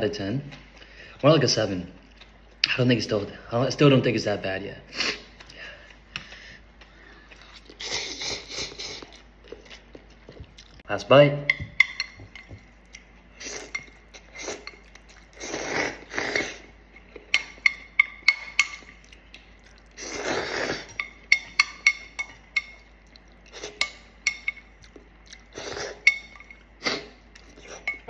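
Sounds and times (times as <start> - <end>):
slurping and chewing noodles: 6.8 - 10.8, 12.9 - 17.8, 18.4 - 21.1, 24.8 - 28.0
utensils clinking against bowl: 11.4 - 12.7, 13.6 - 15.2, 16.4 - 19.2, 20.6 - 22.9, 23.6 - 25.0, 25.9 - 26.7, 27.4 - 28.0.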